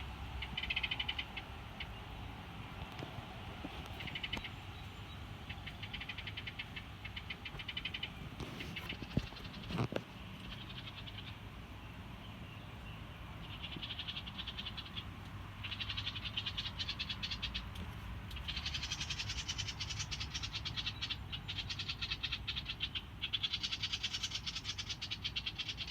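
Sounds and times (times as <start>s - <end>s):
wren rattling trills: 0.0s - 11.5s, 12.2s - 25.9s.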